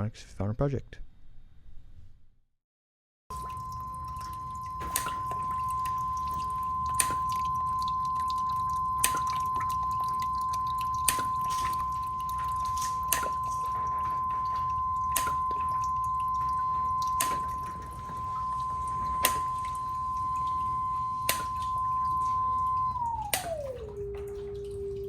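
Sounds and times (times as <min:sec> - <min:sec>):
low hum: 0:03.3 - 0:25.0
steady sine tone: 0:03.3 - 0:25.0
water drips: 0:03.3 - 0:25.0.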